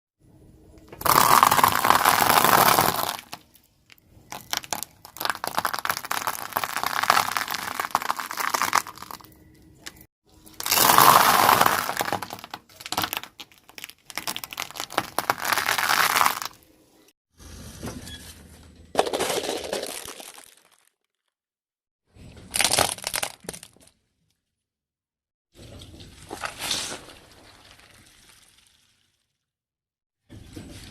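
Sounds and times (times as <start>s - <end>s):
tyre crushing brittle objects: 1.0s - 3.6s, 4.3s - 16.6s, 19.0s - 20.9s, 22.5s - 23.8s.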